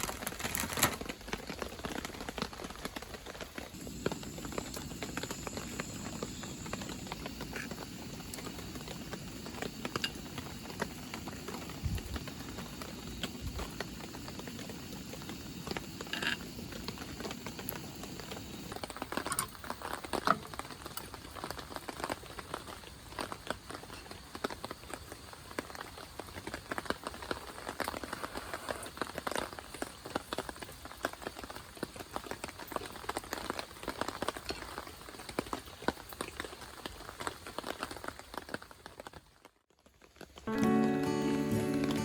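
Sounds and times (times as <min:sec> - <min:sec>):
rain pattering: 0:00.0 - 0:42.0.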